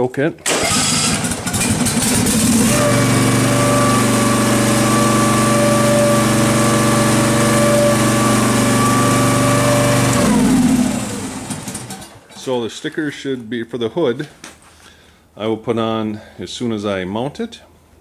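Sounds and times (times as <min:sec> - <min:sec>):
engine winding down: 0:00.5 - 0:12.2
tractor engine running: 0:00.5 - 0:12.3.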